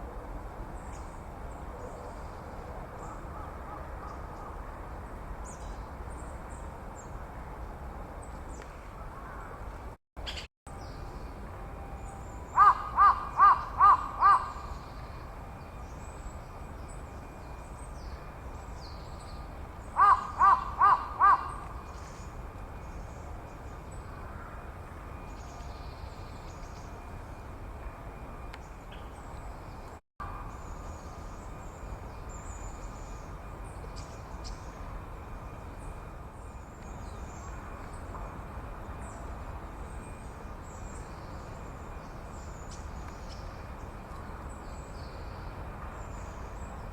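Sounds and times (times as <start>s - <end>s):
crow cawing: 12.6s - 14.6s, 20.0s - 21.7s.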